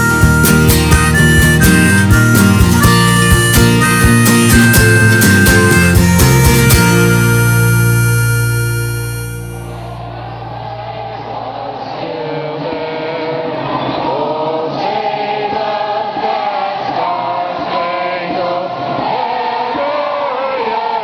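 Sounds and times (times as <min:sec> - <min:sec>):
many voices chanting: 0:09.8 - 0:21.0.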